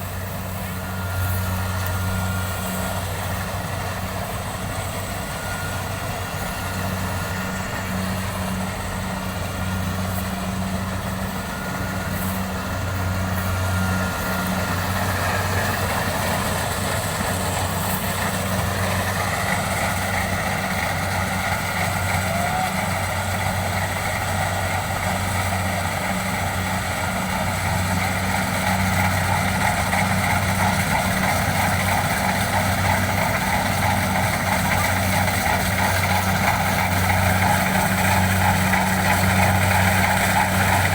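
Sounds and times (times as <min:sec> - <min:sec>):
combine harvester engine drone: 0:00.0 - 0:40.9.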